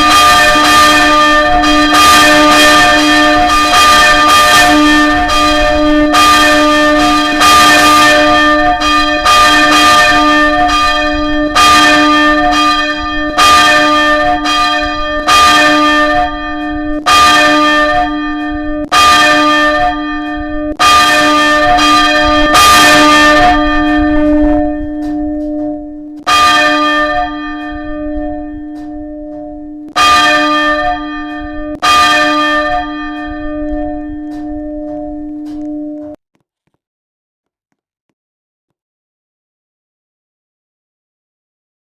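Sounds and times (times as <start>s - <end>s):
church bell ringing: 0.0s - 36.2s
steady low hum: 23.3s - 26.3s.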